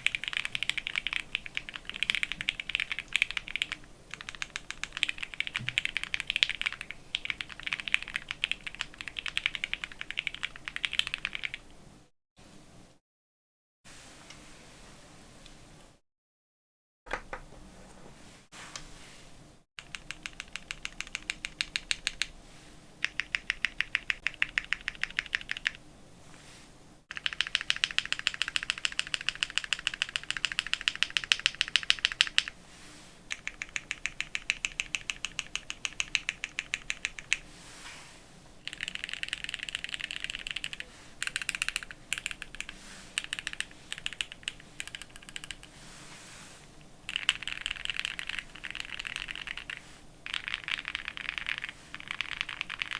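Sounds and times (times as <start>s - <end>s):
mechanical keyboard typing: 0.0s - 11.6s, 19.8s - 22.3s, 23.0s - 25.8s, 27.1s - 32.5s, 33.3s - 37.4s, 38.6s - 45.7s, 47.1s - 52.9s.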